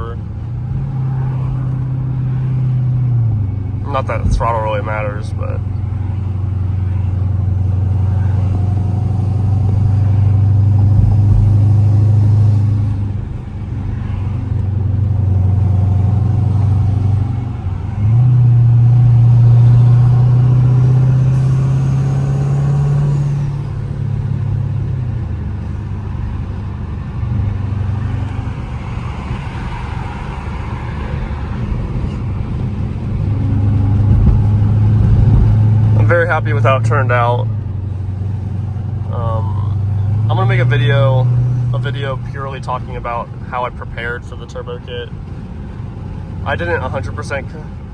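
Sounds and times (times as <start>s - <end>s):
car engine exhaust note: 0.0s - 47.9s
turbo whine: 27.1s - 37.4s.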